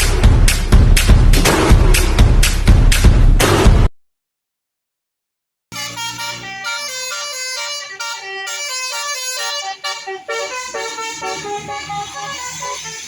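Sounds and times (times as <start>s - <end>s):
bus horn playing a tune: 5.7s - 13.0s.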